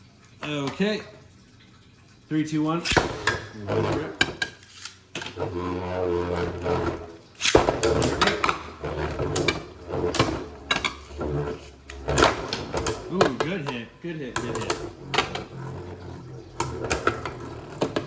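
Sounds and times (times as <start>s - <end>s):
spinning tops whirring hum: 2.3s - 18.0s
spinning tops clashing clacks: 2.8s - 3.6s, 4.3s - 5.1s, 7.4s - 9.7s.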